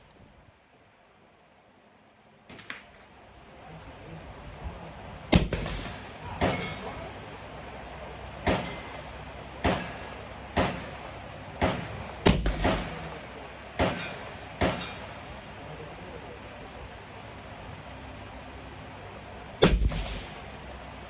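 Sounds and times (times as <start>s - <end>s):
suppressed rifle shots: 5.3s - 6.8s, 11.6s - 13.2s, 13.8s - 15.1s, 19.6s - 20.4s.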